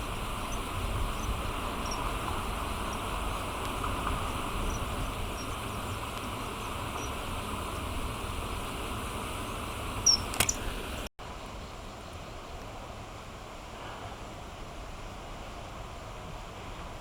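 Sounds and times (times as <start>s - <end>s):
steady outdoor hiss: 0.0s - 17.0s
faint short high chirps: 10.0s - 10.6s.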